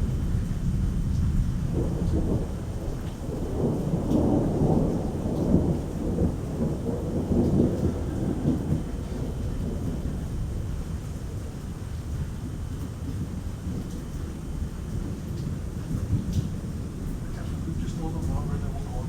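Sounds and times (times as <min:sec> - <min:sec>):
thunder rolling: 0:00.0 - 0:11.5, 0:13.0 - 0:19.0
steady rain: 0:00.0 - 0:19.0.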